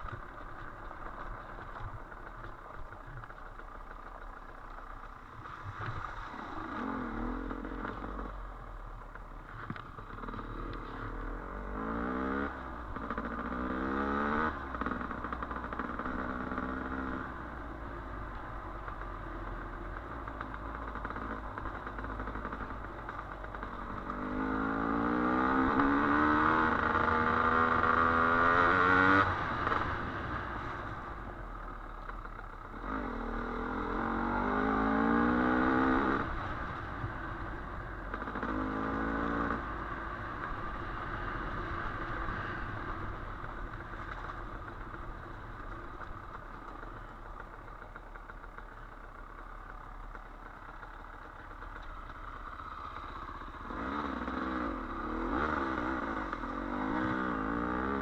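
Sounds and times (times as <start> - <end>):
clatter: 0.0 - 58.0
dirt bike engine accelerating: 9.4 - 17.6, 19.9 - 31.2, 32.0 - 58.0.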